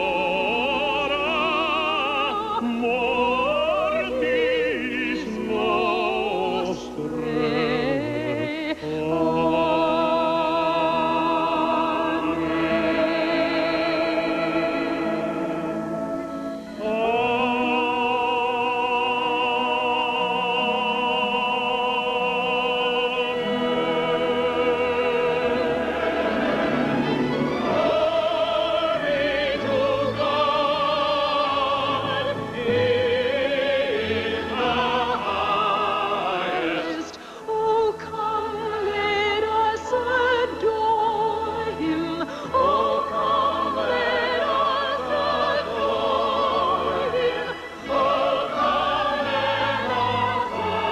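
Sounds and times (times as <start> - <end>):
orchestral accompaniment: 0.0 - 37.4, 40.0 - 50.9
operatic singing: 0.0 - 50.9.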